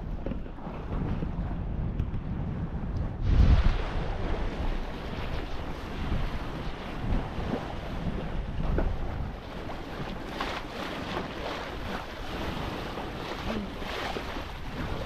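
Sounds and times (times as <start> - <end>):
water rushing along hull: 0.0 - 15.0
wind buffeting microphone: 0.0 - 15.0
small wave splashes: 3.3 - 15.0.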